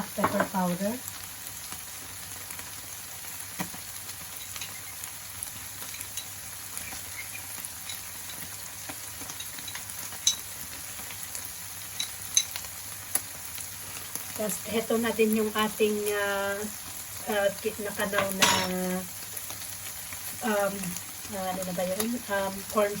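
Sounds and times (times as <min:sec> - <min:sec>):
food sizzling in a pot: 0:00.0 - 0:23.0.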